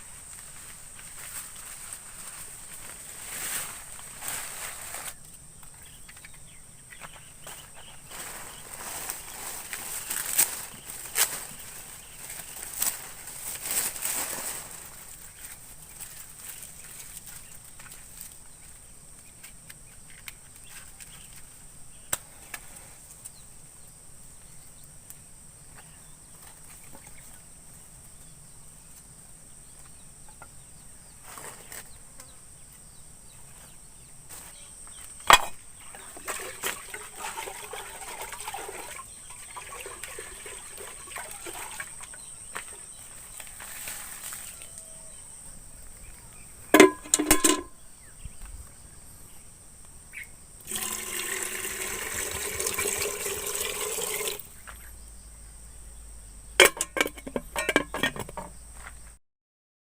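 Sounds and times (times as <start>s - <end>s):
scratchy rustling activity: 0.0s - 5.2s, 7.0s - 18.8s, 31.2s - 32.0s, 40.5s - 44.7s
high insect drone: 38.4s - 56.6s.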